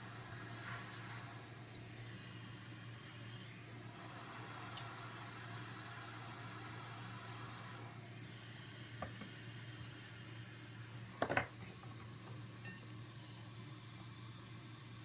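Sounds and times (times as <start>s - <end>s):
faint steady hum: 0.0s - 15.0s
clinks of metal tool and glass: 11.2s - 11.9s, 12.6s - 12.9s.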